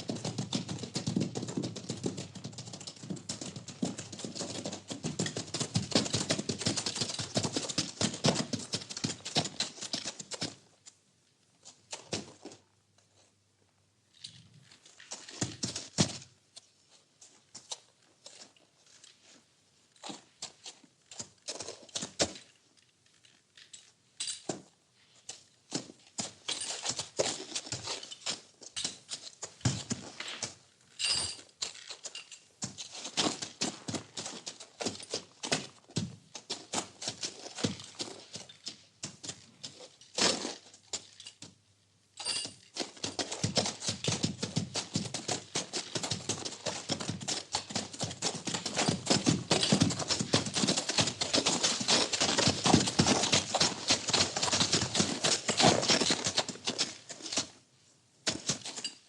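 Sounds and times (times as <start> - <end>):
hooves knocking on floor: 0.0 - 10.6, 14.8 - 16.4, 25.7 - 41.6, 42.2 - 57.6, 58.2 - 59.0.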